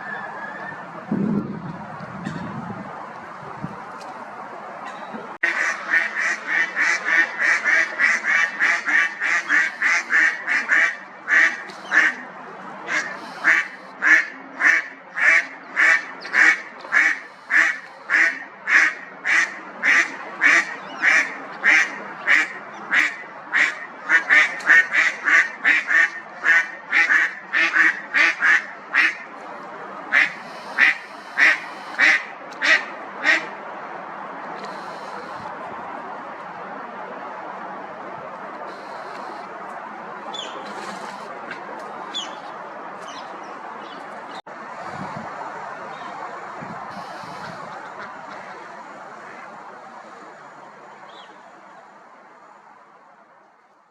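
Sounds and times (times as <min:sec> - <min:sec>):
ducks quacking: 0:04.8 - 0:33.5, 0:34.6 - 0:35.6, 0:38.6 - 0:39.5, 0:40.2 - 0:42.6, 0:46.9 - 0:50.4.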